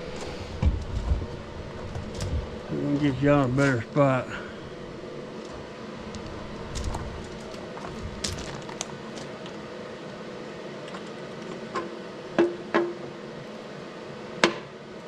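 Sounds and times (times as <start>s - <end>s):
low machine hum: 0.0s - 15.0s.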